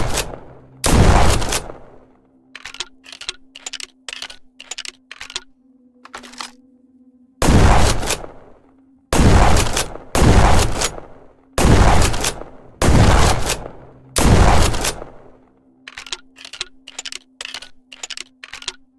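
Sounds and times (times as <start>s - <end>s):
shotgun blasts: 0.0s - 2.0s, 7.4s - 8.5s, 9.2s - 15.3s.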